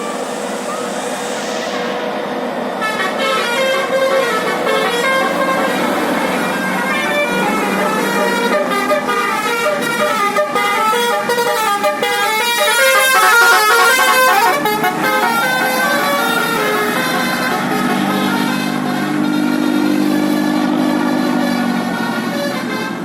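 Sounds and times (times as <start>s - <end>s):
multi-tone musical bus horn: 2.8s - 23.0s.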